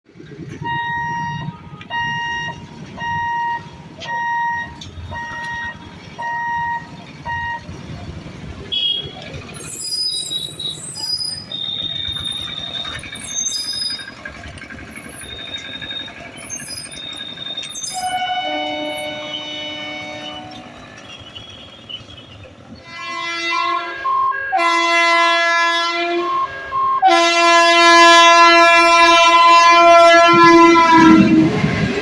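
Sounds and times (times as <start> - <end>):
road traffic rumble: 0.1 - 32.0.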